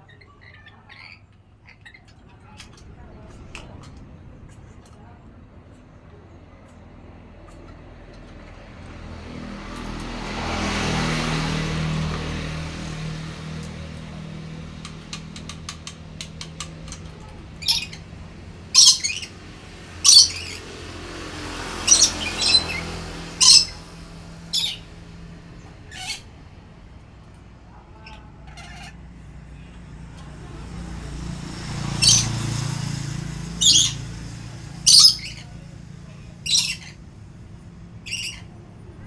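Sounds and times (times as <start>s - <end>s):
broad noise with low hum: 1.5s - 9.5s
parrot squawking: 14.9s - 25.0s, 25.8s - 26.4s, 28.0s - 29.1s, 31.9s - 32.5s, 33.4s - 35.6s, 36.4s - 37.0s, 38.0s - 38.6s.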